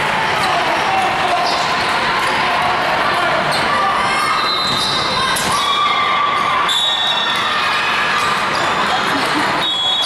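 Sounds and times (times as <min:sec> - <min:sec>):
crowd chatter: 0:00.0 - 0:10.0
shoe squeaks: 0:04.2 - 0:05.7, 0:09.6 - 0:10.0.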